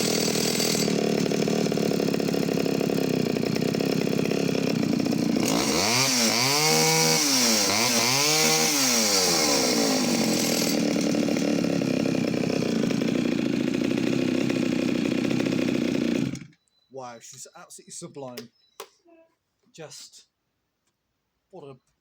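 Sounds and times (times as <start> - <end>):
chainsaw cutting log: 0.0 - 16.6.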